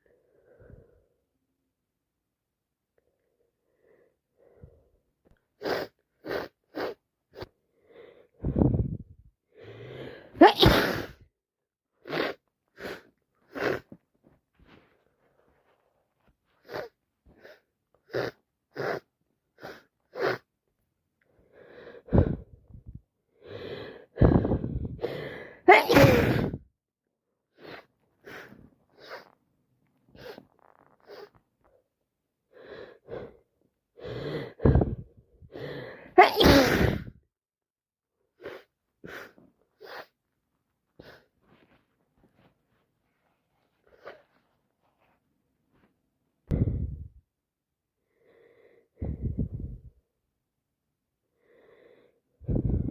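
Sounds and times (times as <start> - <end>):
person sneezing: 5.6 - 7.5, 10.4 - 11.2, 24.3 - 26.6, 34.6 - 37.2
person sniffing: 5.6 - 7.5, 9.9 - 11.2, 12.0 - 14.0, 16.6 - 20.5, 23.4 - 26.6, 27.6 - 29.4, 30.1 - 31.4, 34.1 - 37.1, 38.4 - 40.2, 41.0 - 41.8, 43.8 - 44.4.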